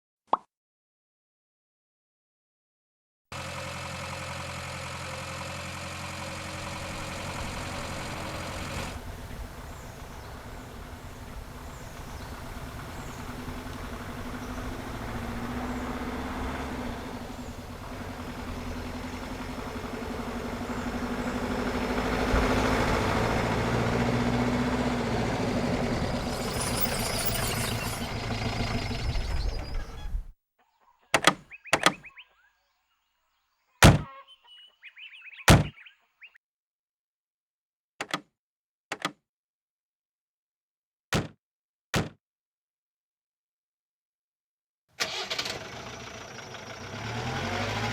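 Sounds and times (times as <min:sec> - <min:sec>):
car engine idling and driving: 0:03.3 - 0:30.3, 0:31.2 - 0:32.2, 0:33.8 - 0:34.1, 0:35.5 - 0:35.8, 0:41.2 - 0:41.4, 0:42.0 - 0:42.2, 0:45.0 - 0:47.9
sharp clicks: 0:38.0 - 0:38.2.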